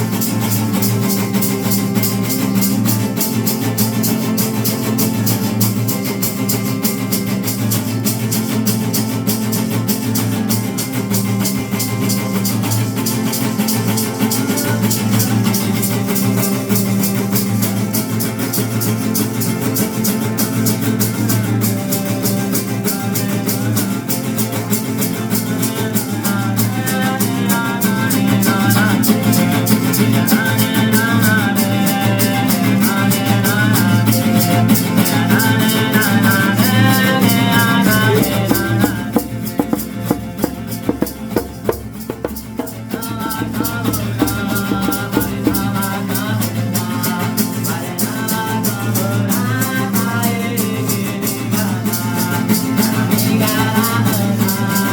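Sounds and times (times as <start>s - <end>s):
plucked guitar: 0.0s - 54.9s
shaken rattle: 0.0s - 54.9s
person singing: 13.8s - 16.3s, 25.6s - 54.9s.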